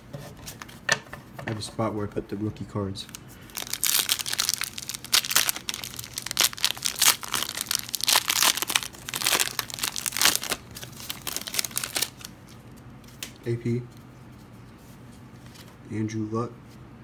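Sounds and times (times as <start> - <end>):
plastic wrapper tearing and crinkling: 3.0 - 12.6.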